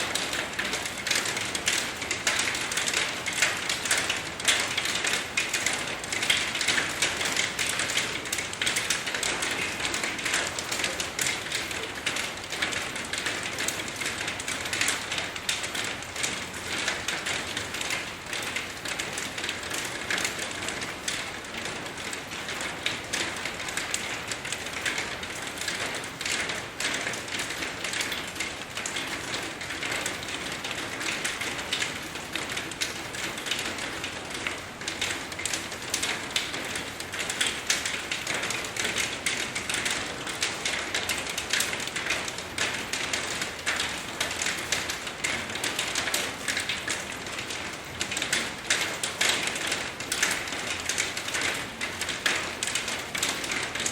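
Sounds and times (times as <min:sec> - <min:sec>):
raindrops ticking: 0:00.0 - 0:53.9
steady rainfall: 0:00.0 - 0:53.9.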